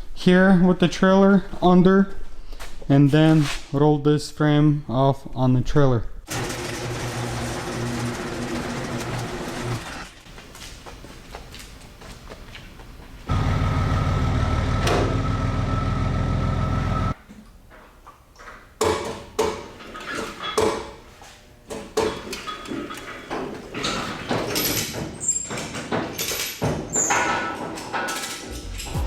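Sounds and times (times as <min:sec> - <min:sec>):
vehicle engine running: 0:13.3 - 0:17.2.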